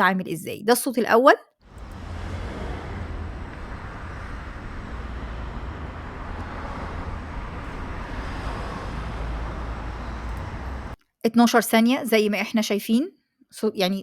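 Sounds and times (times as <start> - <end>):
deep rumble: 1.6 - 11.0.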